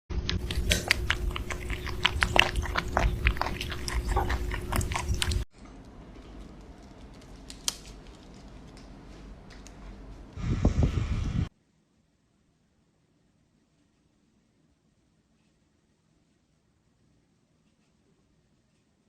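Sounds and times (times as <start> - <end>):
animal chewing noisily: 0.3 - 9.0.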